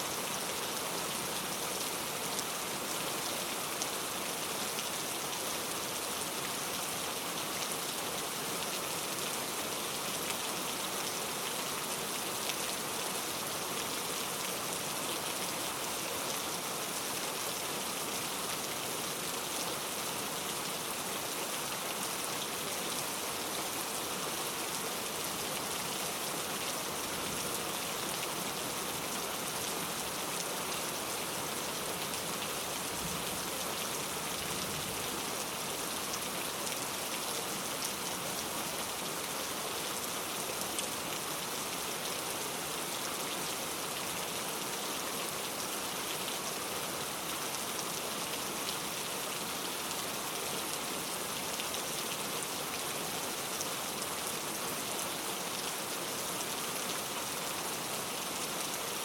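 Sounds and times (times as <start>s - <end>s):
steady rain hiss: 0.0s - 59.0s.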